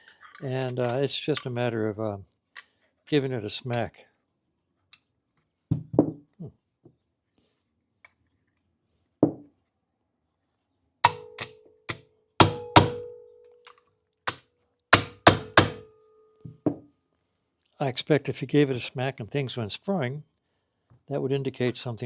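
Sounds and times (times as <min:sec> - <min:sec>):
hammer smacking valve stems: 0:11.1 - 0:11.5, 0:12.4 - 0:13.1, 0:15.0 - 0:15.8.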